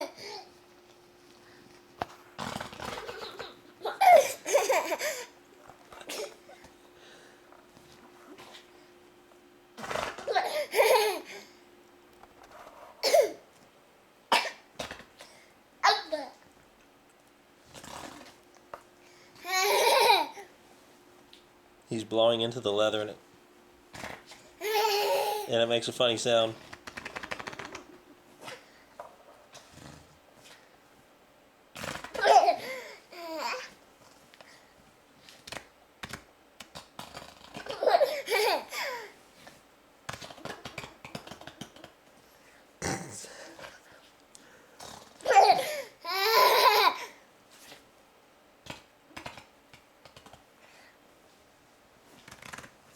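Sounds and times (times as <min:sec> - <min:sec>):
baby laughing: 0:00.0 - 0:00.5, 0:02.9 - 0:05.4, 0:10.3 - 0:11.4, 0:19.4 - 0:20.5, 0:24.6 - 0:25.5, 0:32.2 - 0:33.7, 0:37.6 - 0:39.2, 0:45.2 - 0:47.2.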